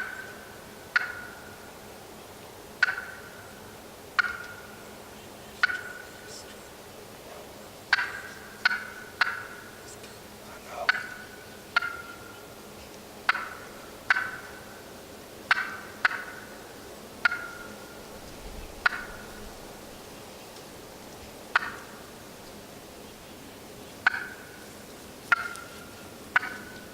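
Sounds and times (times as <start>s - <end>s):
turkey clucking: 0.0s - 1.6s, 2.8s - 4.9s, 5.6s - 6.4s, 7.5s - 12.5s, 13.2s - 14.8s, 15.5s - 17.9s, 18.8s - 19.4s, 21.5s - 22.0s, 24.0s - 24.6s, 25.3s - 26.9s.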